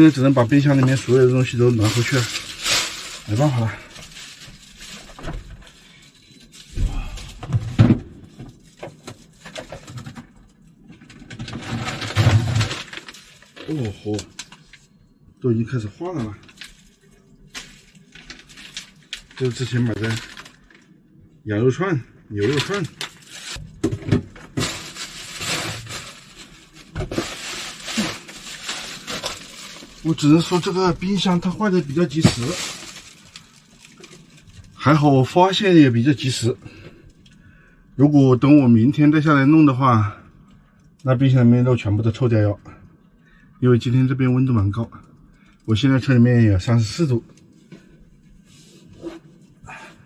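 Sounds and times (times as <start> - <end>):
plastic bags rustling: 0.0 - 10.6, 11.5 - 14.9, 16.1 - 20.9, 22.4 - 37.4.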